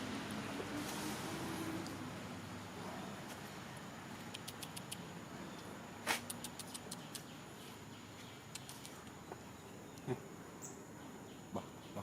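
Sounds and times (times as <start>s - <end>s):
faint sharp clicks: 4.2s - 7.3s.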